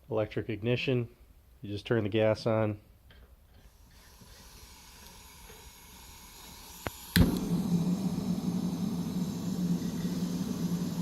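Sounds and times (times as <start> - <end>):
gas hissing: 3.6 - 11.0
burner flame roaring: 4.0 - 11.0
igniter click: 6.8 - 11.0
low hum: 7.1 - 11.0.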